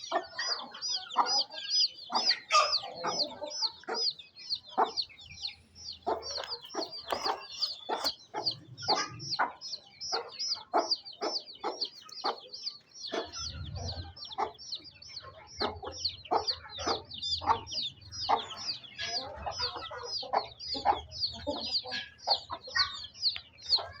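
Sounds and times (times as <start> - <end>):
chickens clucking: 0.0 - 24.0.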